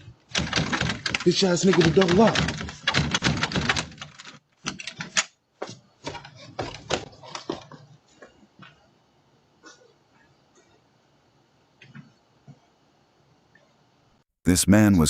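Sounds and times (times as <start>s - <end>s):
door handle and latch rattling: 0.3s - 5.3s.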